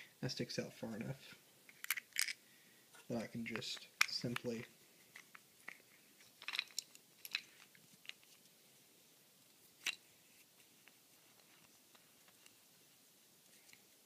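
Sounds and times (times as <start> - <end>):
metallic clicks and scrapes of clamp: 1.7 - 2.4, 5.1 - 8.4.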